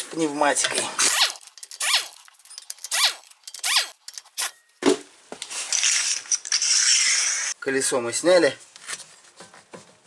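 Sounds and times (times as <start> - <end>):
pneumatic impact wrench: 1.1 - 4.8.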